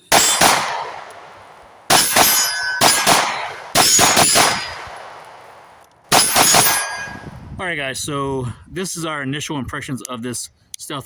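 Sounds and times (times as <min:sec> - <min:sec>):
pistol shots with echo: 0:00.0 - 0:07.4.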